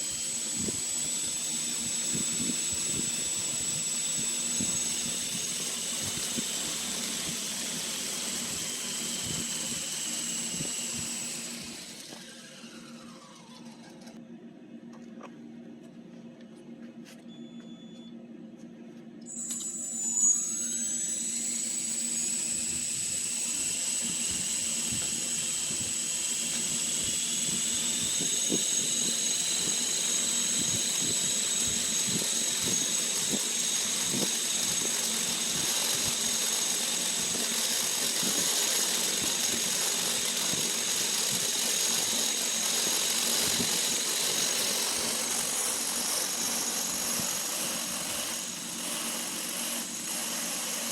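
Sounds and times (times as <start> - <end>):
rc helicopter motor whine: 0.0 - 14.2, 19.3 - 50.9.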